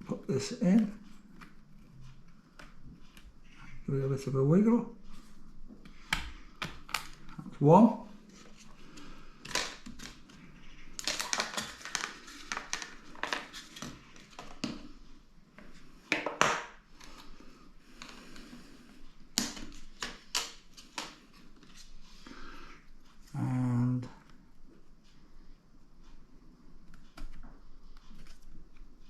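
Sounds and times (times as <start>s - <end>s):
plastic packaging crinkling: 9.5s - 14.4s.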